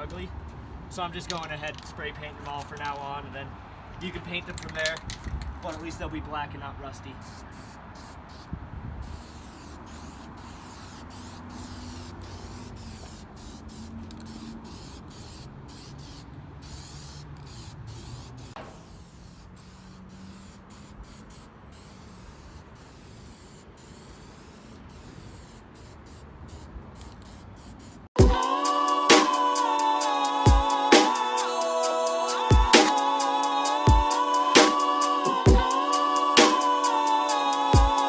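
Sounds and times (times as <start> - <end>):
spray paint can hissing: 7.2 - 38.0
music: 28.2 - 38.0.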